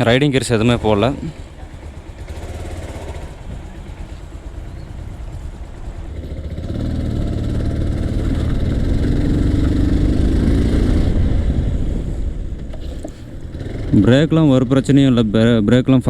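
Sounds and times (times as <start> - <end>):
motorcycle engine accelerating: 0.0 - 16.0.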